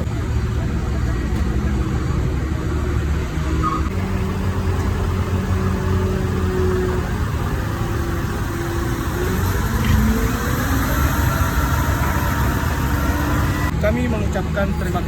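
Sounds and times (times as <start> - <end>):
vehicle engine running: 3.9 - 14.3.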